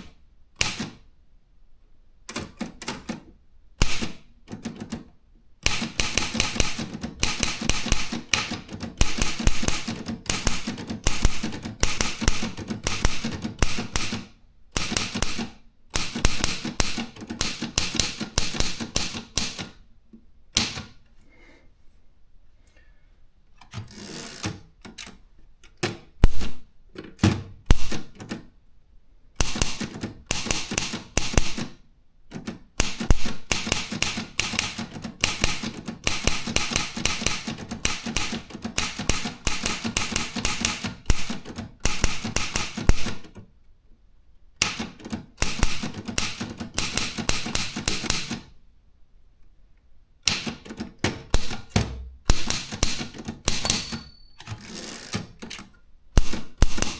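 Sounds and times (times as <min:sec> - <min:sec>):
typewriter keys clicking: 0:00.0 - 0:01.0, 0:02.3 - 0:19.8, 0:20.6 - 0:21.0, 0:27.3 - 0:28.5, 0:29.4 - 0:43.5, 0:44.6 - 0:48.5, 0:50.2 - 0:56.9.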